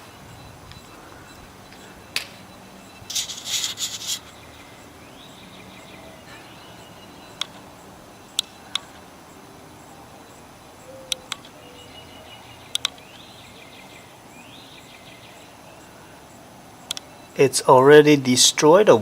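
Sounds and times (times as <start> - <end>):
crackling electrical sparks: 3.1 - 4.4
sharp electrical snaps: 3.1 - 4.4.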